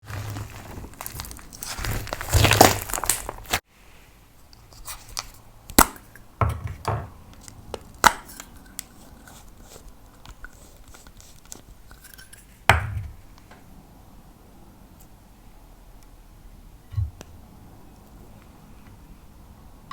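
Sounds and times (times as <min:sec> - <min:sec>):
dull thuds: 0:12.7 - 0:13.2.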